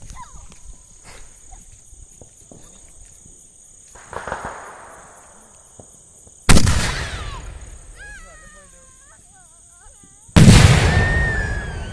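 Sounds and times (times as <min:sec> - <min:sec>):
firecracker bang: 0:04.0 - 0:05.1, 0:05.8 - 0:07.8, 0:10.4 - 0:11.9.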